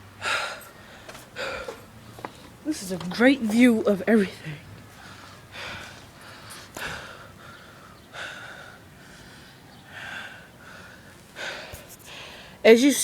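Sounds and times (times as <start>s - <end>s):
person breathing close to microphone: 4.9s - 12.6s.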